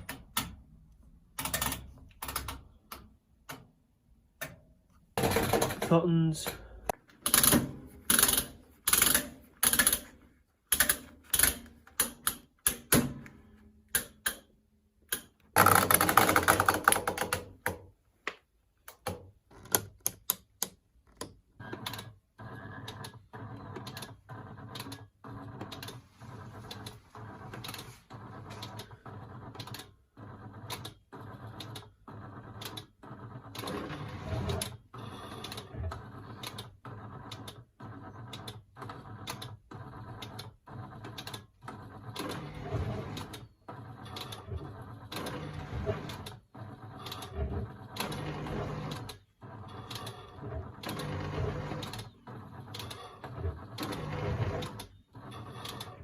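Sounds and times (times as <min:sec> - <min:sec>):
washing machine dials clicking: 0:07.1 - 0:17.8.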